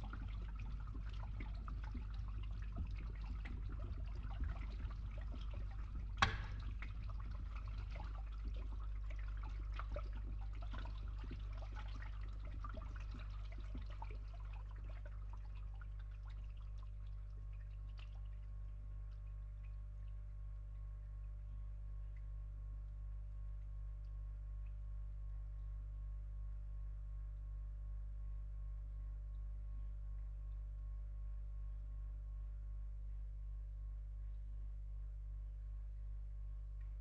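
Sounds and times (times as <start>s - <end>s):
water draining through pipe: 0.0s - 22.4s
pump humming: 0.0s - 25.4s
sharp drip or knock: 6.2s - 6.8s.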